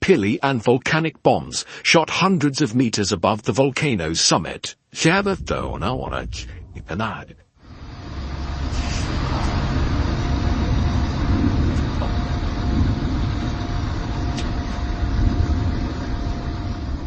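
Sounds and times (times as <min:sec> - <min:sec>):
volcano erupting rumble: 0:05.2 - 0:17.0.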